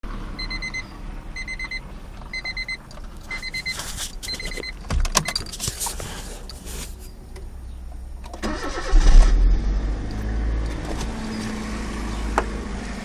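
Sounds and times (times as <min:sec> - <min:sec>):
car engine running: 0:00.1 - 0:13.0
car warning chime beeping: 0:00.4 - 0:08.9
engine starter cranking: 0:02.2 - 0:11.6.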